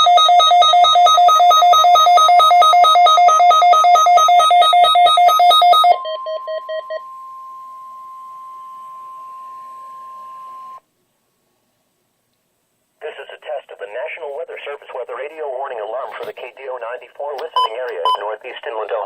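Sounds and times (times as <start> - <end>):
steady alarm tone: 0.0 - 10.8
two-pitch electronic alarm beeps: 0.0 - 10.8.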